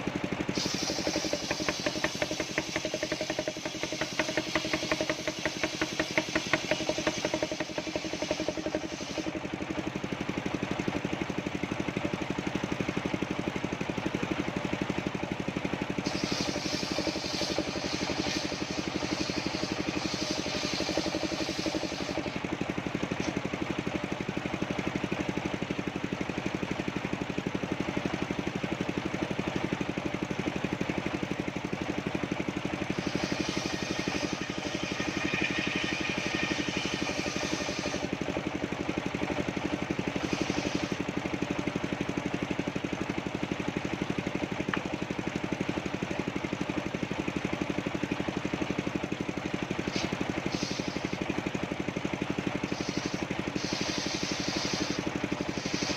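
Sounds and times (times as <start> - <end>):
sawmill engine running: 0.0 - 55.9
bright hiss: 0.5 - 9.3, 16.0 - 22.4, 52.7 - 55.9.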